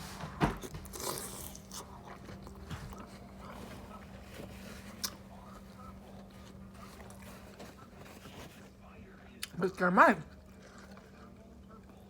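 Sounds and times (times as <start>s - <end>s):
chewing and mouth sounds: 0.6s - 4.0s, 10.3s - 12.0s.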